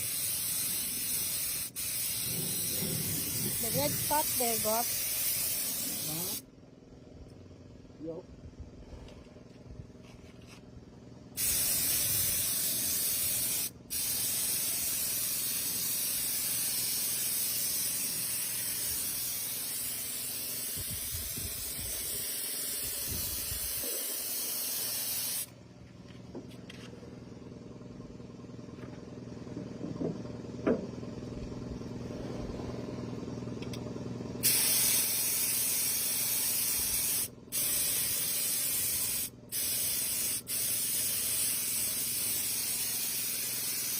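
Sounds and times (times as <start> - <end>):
paint spray gun hissing: 0.0 - 6.4, 11.4 - 25.5, 34.4 - 43.9
steady low hum: 0.0 - 43.9.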